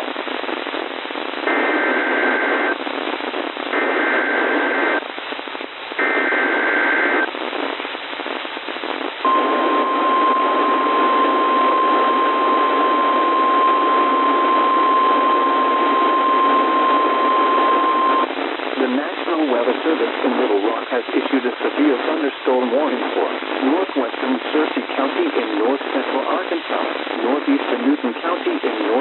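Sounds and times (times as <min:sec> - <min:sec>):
radio hiss: 0:00.0 - 0:29.0
steady warning alarm tone: 0:09.2 - 0:18.3
shrill two-pitch data warble: 0:09.3 - 0:18.3.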